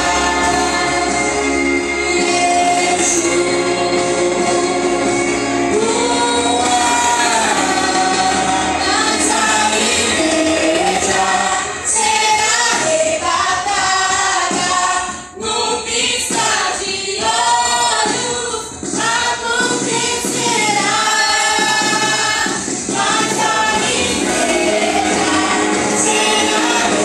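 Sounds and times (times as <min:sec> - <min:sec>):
group singing worship song: 0:00.0 - 0:27.0
music accompaniment: 0:00.0 - 0:27.0.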